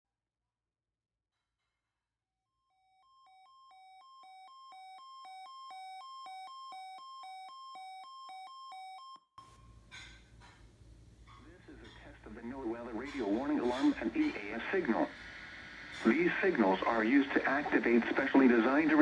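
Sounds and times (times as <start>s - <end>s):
electronic two-tone alarm beeping: 2.9s - 9.8s.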